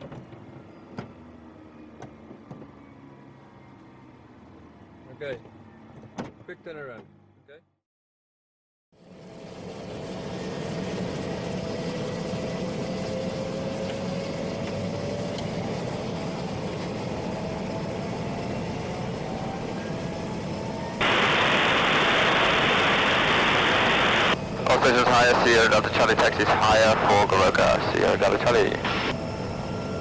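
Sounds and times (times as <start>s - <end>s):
radio hiss: 20.0s - 29.2s.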